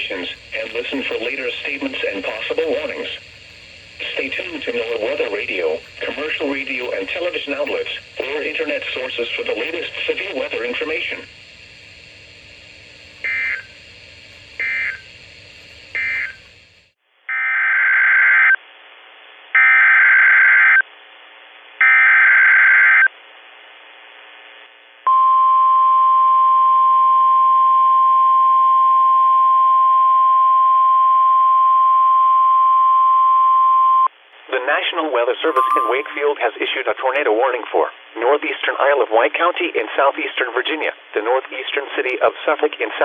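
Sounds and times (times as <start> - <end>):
steady warning alarm tone: 0.0 - 16.7, 35.5 - 36.4
buzzy data bursts: 0.0 - 16.8.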